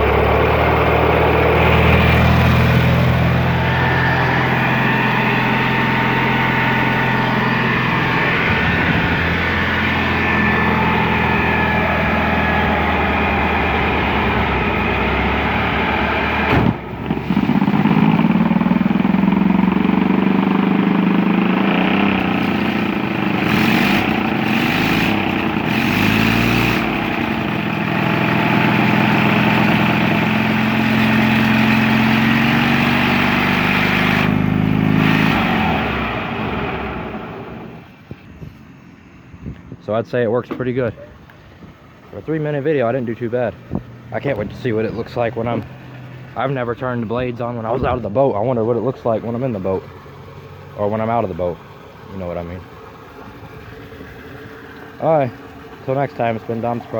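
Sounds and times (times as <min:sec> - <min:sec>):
small engine running: 0:00.0 - 0:15.7, 0:17.0 - 0:37.8.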